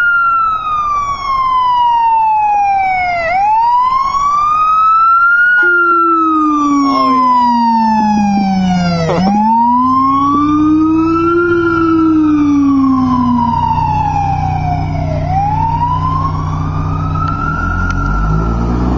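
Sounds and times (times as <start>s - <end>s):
wailing siren: 0.0s - 18.9s
low vehicle rumble: 5.6s - 18.9s.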